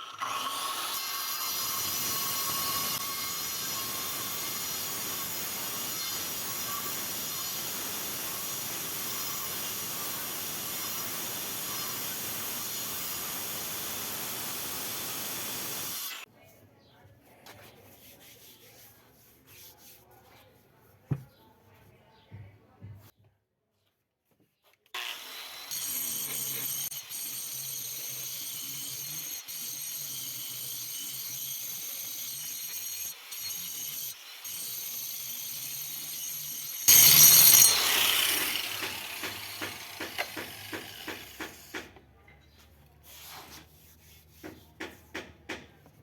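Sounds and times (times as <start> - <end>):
angle grinder whining: 0.0 - 16.2, 25.0 - 41.4.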